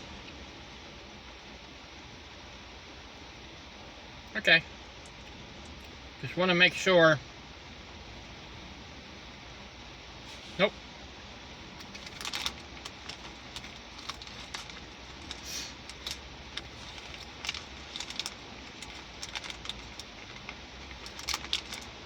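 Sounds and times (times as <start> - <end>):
candy bag rustling: 11.7 - 22.0
hard candies clicking together: 11.8 - 22.0.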